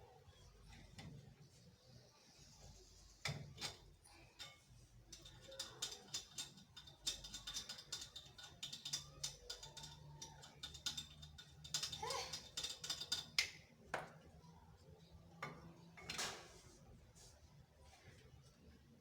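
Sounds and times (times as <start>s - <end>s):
wrench clicking on wheel nuts: 4.5s - 13.6s.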